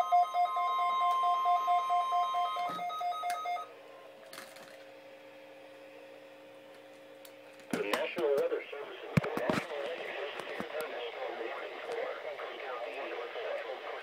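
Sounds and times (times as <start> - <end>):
warning alarm tone: 0.0 - 3.8
low steady hum: 0.0 - 14.0
broadcast voice: 7.7 - 14.0
faint radio hiss: 7.8 - 14.0.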